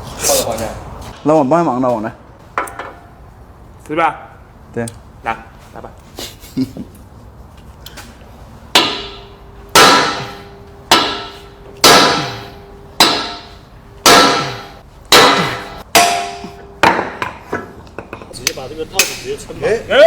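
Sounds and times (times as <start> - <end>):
hammer striking metal: 8.7 - 19.3.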